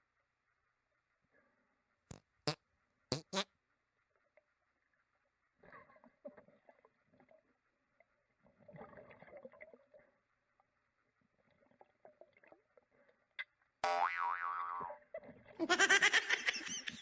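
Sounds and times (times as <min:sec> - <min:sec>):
muffled pool water gurgling: 0:03.6 - 0:17.0
cartoon boing sound effect: 0:13.8 - 0:15.0.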